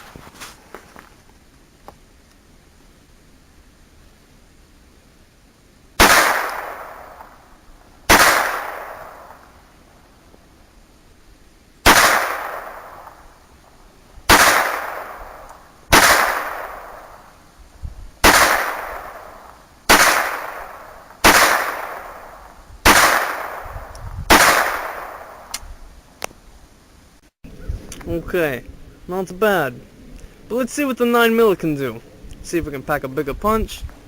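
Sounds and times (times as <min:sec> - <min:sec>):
pistol shots echoing: 0:06.0 - 0:07.4, 0:08.1 - 0:09.5, 0:11.9 - 0:13.2, 0:14.3 - 0:17.2, 0:18.2 - 0:23.7, 0:24.3 - 0:25.5.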